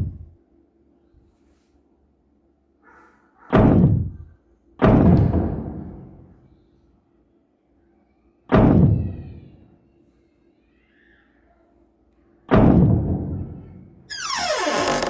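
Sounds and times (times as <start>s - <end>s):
loud heavy slams ringing out: 3.5s - 6.4s, 8.5s - 9.4s, 12.5s - 13.6s.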